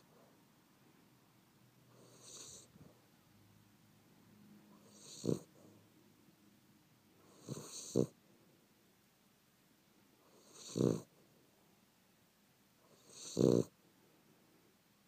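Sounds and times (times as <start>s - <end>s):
pet snoring: 1.9s - 2.9s, 4.8s - 5.7s, 7.2s - 8.2s, 10.2s - 11.1s, 12.9s - 13.7s
sharp snort: 2.0s - 2.7s, 4.8s - 5.6s, 7.3s - 8.1s, 10.3s - 11.1s, 12.9s - 13.7s.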